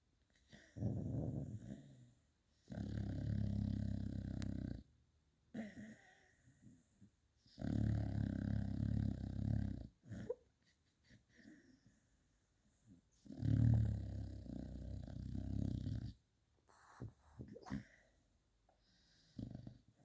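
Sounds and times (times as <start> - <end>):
dog snoring: 0.5 - 4.9, 7.4 - 10.4, 13.2 - 18.0, 18.9 - 20.0
dog breathing quietly: 16.7 - 18.0.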